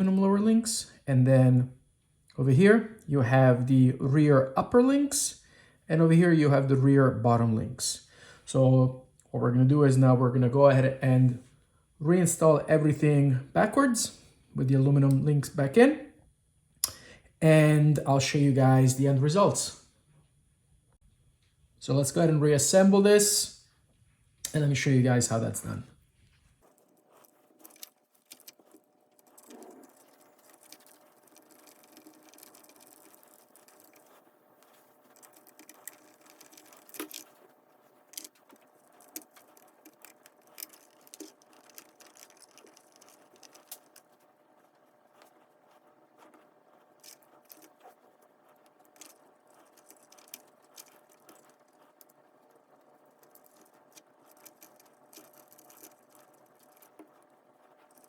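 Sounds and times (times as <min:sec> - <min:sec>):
small parts clicking and tapping: 0:26.6 - 0:58.0.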